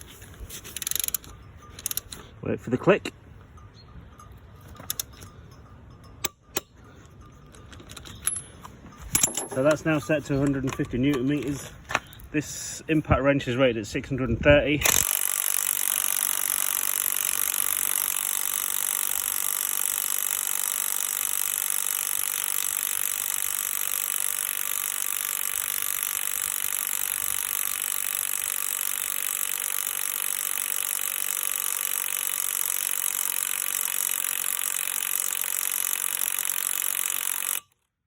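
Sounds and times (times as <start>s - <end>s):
impact wrench hammering: 9.2s - 9.8s, 14.8s - 37.7s.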